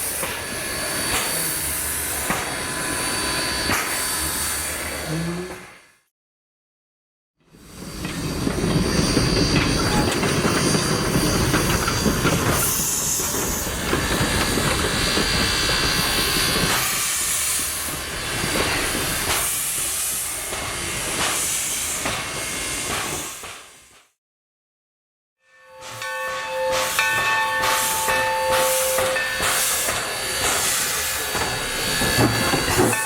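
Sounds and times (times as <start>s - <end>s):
train wheels rumbling: 7.8s - 23.3s, 26.9s - 33.0s.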